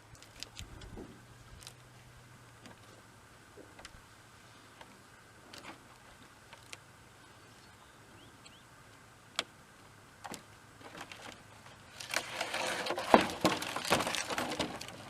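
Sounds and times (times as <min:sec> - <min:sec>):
wood pieces knocking and clattering: 0:12.0 - 0:15.0.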